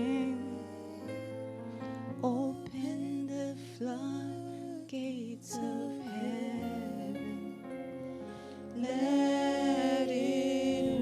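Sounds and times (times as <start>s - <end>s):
instrumental backing: 5.2s - 11.0s
person singing long notes: 8.7s - 11.0s.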